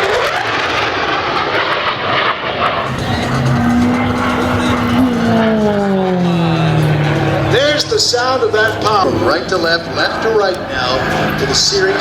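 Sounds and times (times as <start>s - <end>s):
aircraft engine roar: 0.0s - 12.0s
humming tone: 2.8s - 9.4s.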